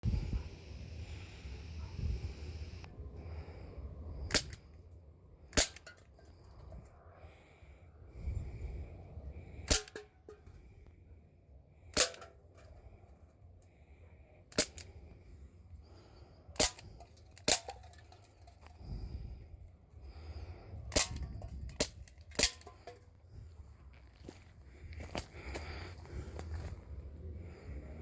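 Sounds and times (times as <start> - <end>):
heavy breathing: 22.6 - 28.0.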